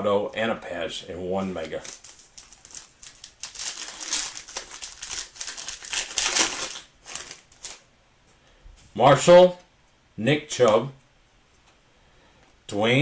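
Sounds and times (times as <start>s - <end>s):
wrapper crinkling and rustling: 1.4s - 7.8s.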